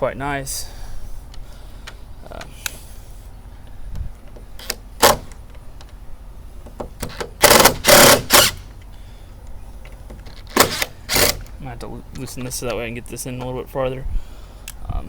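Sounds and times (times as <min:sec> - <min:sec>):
cordless power driver whirring: 0:07.0 - 0:08.7, 0:10.3 - 0:11.5.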